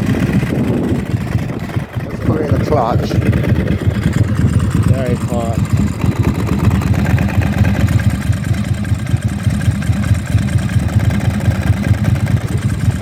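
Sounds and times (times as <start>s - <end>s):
dry clutch rattle: 0.0s - 13.0s
motorcycle engine idling: 0.0s - 13.0s.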